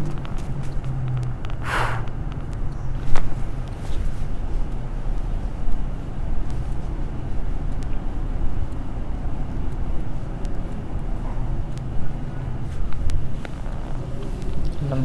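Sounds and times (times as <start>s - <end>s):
low background rumble: 0.0s - 15.0s
faint ticks: 0.1s - 4.9s.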